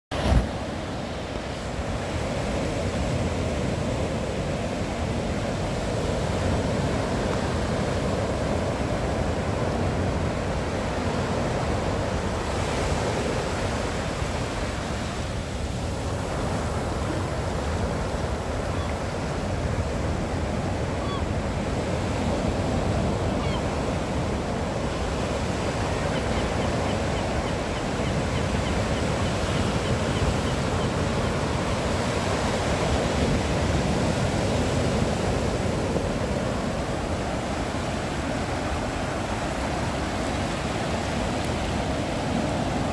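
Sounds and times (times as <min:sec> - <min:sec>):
waves washing onto shore: 0:00.1 - 0:42.9.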